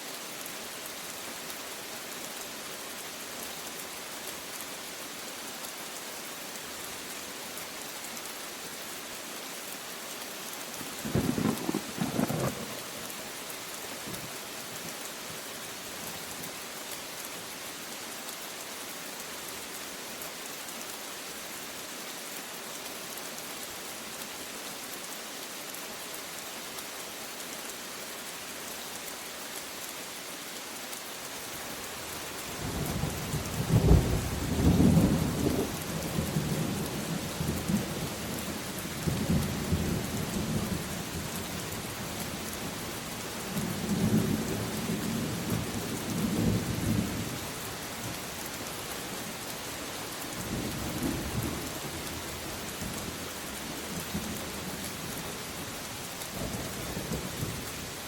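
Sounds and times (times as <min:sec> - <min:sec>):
steady rain: 0:00.0 - 0:58.0
rolling thunder rumble: 0:11.1 - 0:12.8.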